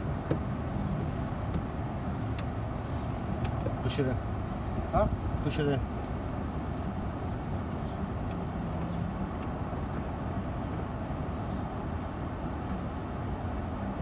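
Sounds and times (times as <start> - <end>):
engine running steadily: 0.0 - 14.0
faint ticks: 1.5 - 2.6, 8.2 - 8.5, 9.2 - 10.8.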